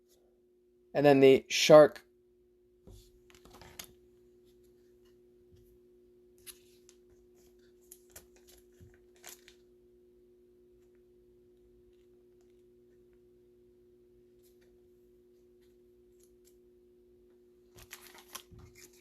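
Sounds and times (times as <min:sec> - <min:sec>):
low electrical hum: 0:00.0 - 0:19.0
soft rustling of card sleeves: 0:06.4 - 0:09.6, 0:17.7 - 0:19.0.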